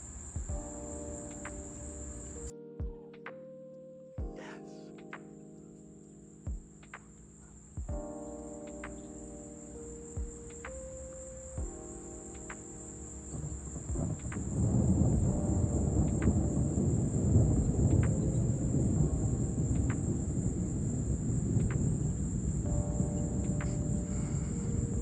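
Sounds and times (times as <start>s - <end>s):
crickets chirping: 0.0s - 2.5s, 6.9s - 25.0s
thunder rumbling: 10.2s - 25.0s.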